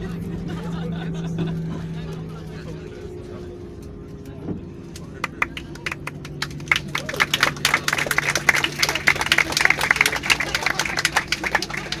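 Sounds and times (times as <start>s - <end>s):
aircraft hum: 0.0s - 12.0s
passengers clapping: 4.9s - 12.0s.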